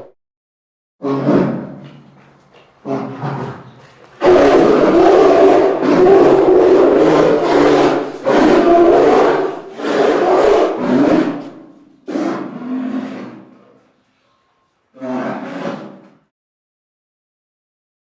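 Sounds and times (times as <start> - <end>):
polar bear growling: 1.0 - 13.8, 15.0 - 16.3.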